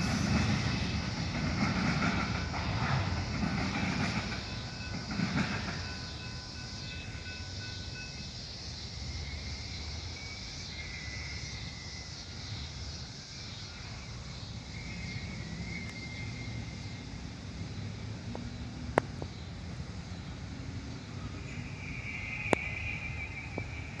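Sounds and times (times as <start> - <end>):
outdoor hiss: 0.0 - 1.4
distant train rumble: 0.0 - 24.0.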